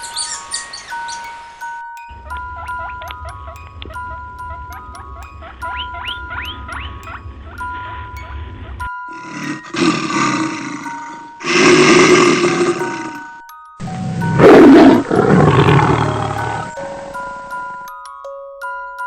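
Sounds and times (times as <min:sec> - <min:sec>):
plinking melody: 0:00.0 - 0:19.0
big cat roars: 0:09.1 - 0:13.2, 0:13.8 - 0:17.0.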